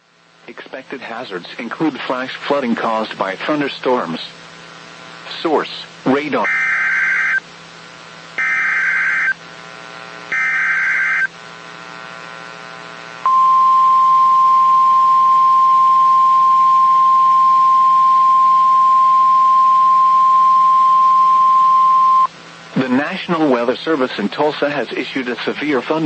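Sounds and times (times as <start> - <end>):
buzzy data bursts: 5.3 - 7.4, 8.4 - 9.4, 10.3 - 11.3.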